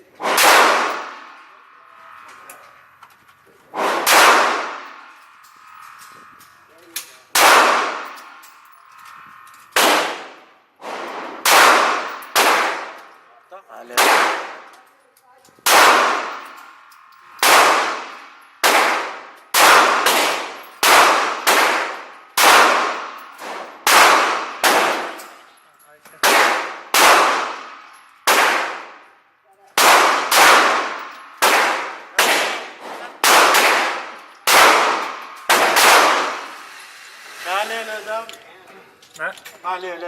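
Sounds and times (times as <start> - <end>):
pistol shots ringing: 0.2 - 1.3, 3.9 - 5.1, 7.3 - 8.4, 9.8 - 13.1, 13.9 - 14.7, 15.6 - 16.7, 17.4 - 25.4, 26.2 - 29.0, 29.8 - 36.6.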